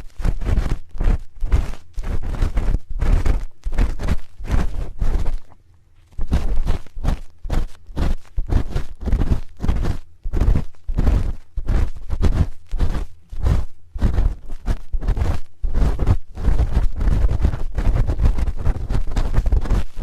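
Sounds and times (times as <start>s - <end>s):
spoon scraping microphone: 0.0s - 20.0s.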